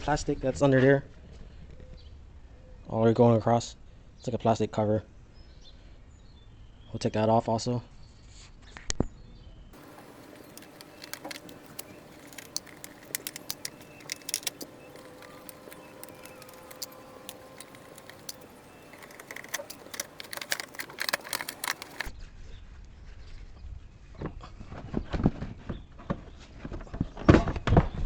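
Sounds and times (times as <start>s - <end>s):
faint steady hum: 9.8s - 22.1s
hand tools clicking and clinking: 9.8s - 22.1s
plastic trim fasteners clicking: 9.8s - 22.1s.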